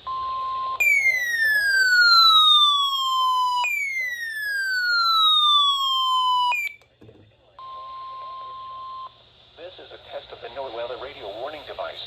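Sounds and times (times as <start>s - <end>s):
falling siren-like alert tone: 0.8s - 6.8s
steady warning alarm tone: 0.8s - 6.8s
radio hiss: 9.2s - 12.0s.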